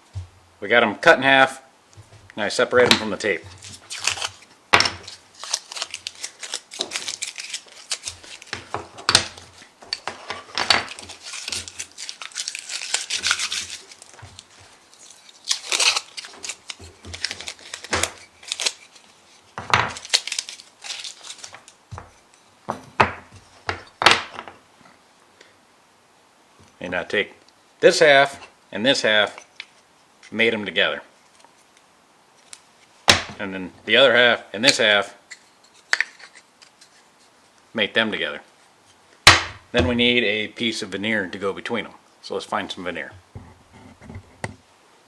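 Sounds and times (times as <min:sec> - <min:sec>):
tape peeling and tearing: 0:03.0 - 0:10.1, 0:10.8 - 0:21.8
tape crinkling: 0:03.0 - 0:22.5, 0:34.7 - 0:37.6
wooden pieces knocking: 0:08.1 - 0:11.7, 0:19.6 - 0:20.0, 0:21.5 - 0:24.6.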